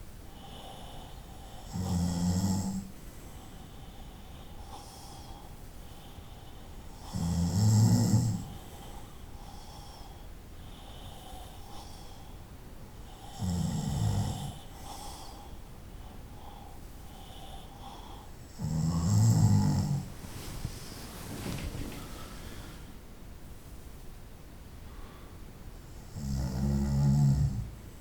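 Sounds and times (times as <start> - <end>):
soft breaths: 0.0 - 13.5, 14.1 - 26.1
person snoring: 1.6 - 2.9, 7.0 - 8.6, 13.2 - 15.4, 17.2 - 20.2, 26.1 - 27.7.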